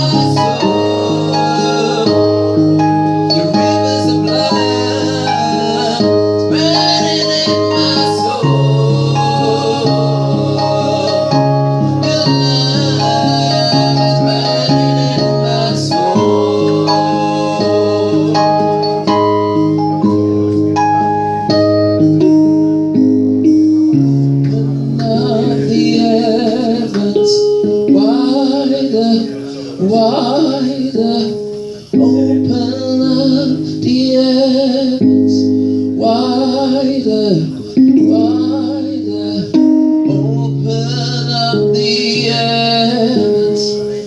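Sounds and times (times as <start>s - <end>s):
singing: 0.0s - 2.5s, 3.3s - 18.9s
instruments playing held chords: 0.0s - 44.0s.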